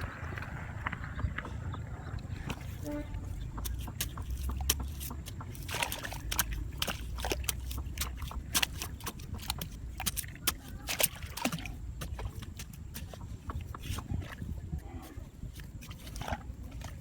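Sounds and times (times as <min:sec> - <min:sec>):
low rumble: 0:00.0 - 0:04.0
shallow water sloshing and splashing: 0:00.0 - 0:17.0.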